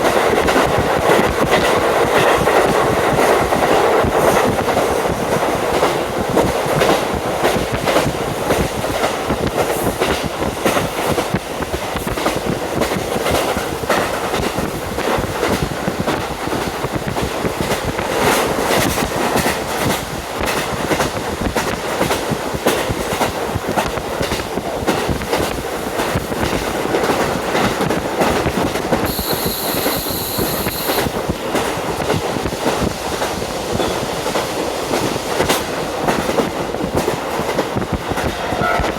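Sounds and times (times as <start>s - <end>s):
train wheels clicking over joints: 0.0s - 38.9s
wind rushing through window: 0.0s - 38.9s
high-pitched steady tone: 29.1s - 31.1s.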